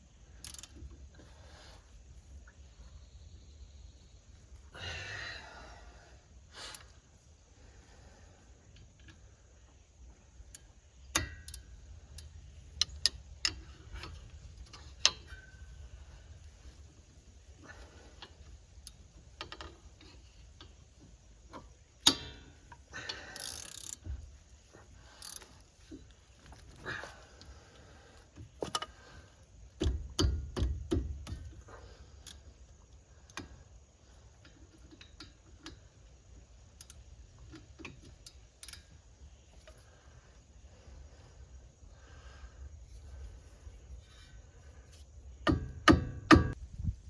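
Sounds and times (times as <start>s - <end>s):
metal clicks and clanks: 10.5s - 15.8s, 18.2s - 24.2s, 29.8s - 32.4s, 34.4s - 36.1s, 45.4s - 46.6s.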